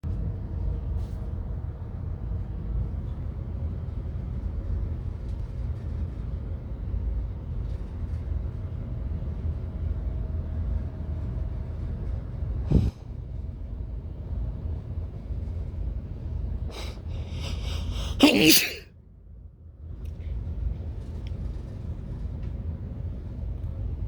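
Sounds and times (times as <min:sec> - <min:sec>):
faint breathing: 0:16.7 - 0:18.8
man gasping before sneeze: 0:16.7 - 0:18.8.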